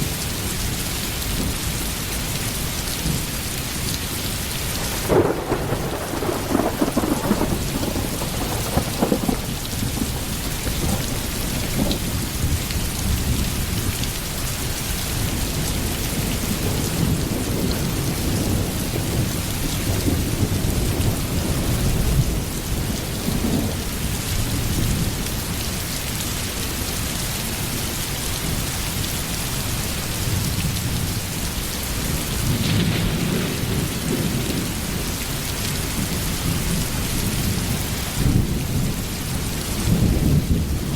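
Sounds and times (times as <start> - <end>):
steady rain: 0.0 - 40.9
thunder rumbling: 4.7 - 13.8, 32.0 - 40.9.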